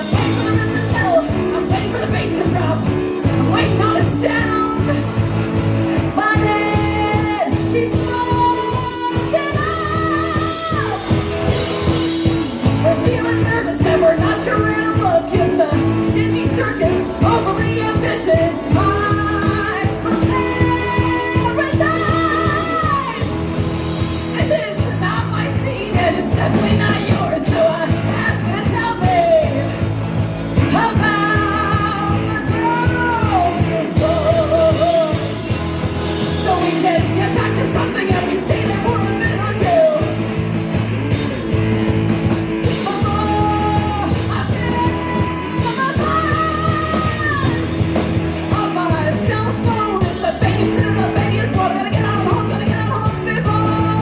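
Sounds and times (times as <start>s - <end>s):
person singing: 0.0s - 29.9s, 30.5s - 54.0s
live rock band playing: 0.0s - 54.0s.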